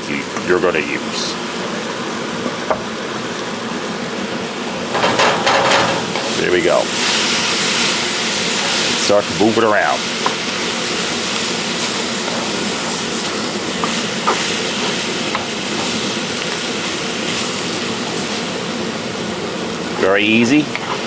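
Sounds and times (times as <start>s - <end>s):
food sizzling in a wok: 0.9s - 21.0s.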